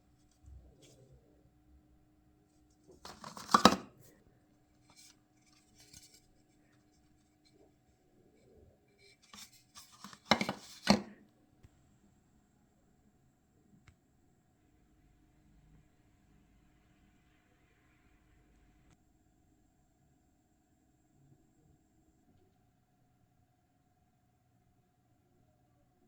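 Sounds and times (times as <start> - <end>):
items clicking and clattering: 2.9 - 3.9, 4.9 - 6.3, 9.0 - 11.2.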